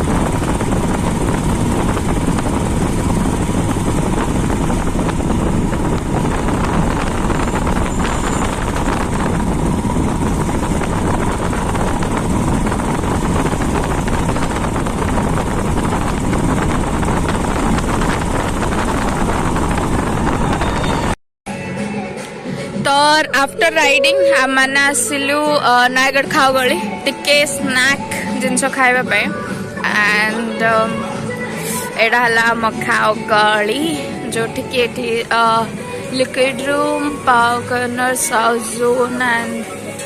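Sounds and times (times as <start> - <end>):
motorcycle engine: 0.0 - 21.2
road noise: 0.0 - 21.2, 22.2 - 40.0
wind buffeting microphone: 0.0 - 21.2.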